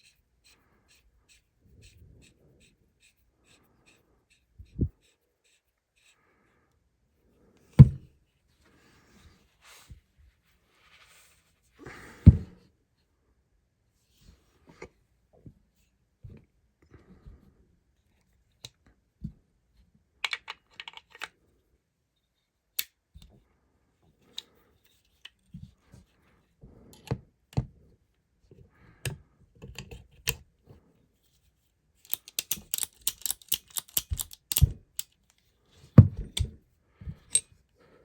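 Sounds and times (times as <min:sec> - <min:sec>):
revolver parts clicking and clinking: 0:32.0 - 0:35.5, 0:37.2 - 0:37.5.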